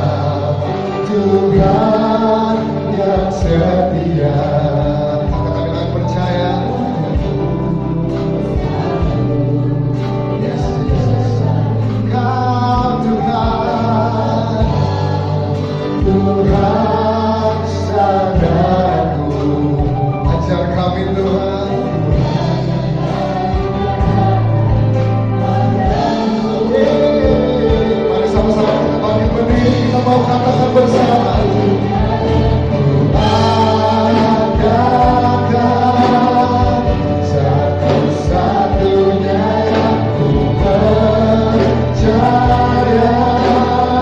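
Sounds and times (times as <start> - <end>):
choir singing in harmony: 0.0 - 44.0
steady drum beat: 0.0 - 44.0
sustained bass notes: 0.0 - 44.0.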